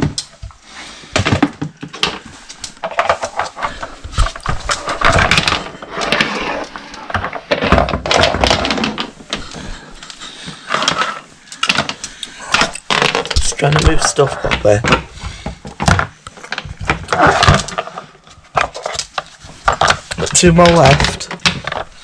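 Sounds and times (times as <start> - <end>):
household objects knocking and clattering: 0.0 - 9.8, 10.4 - 22.0
rustling: 0.0 - 22.0.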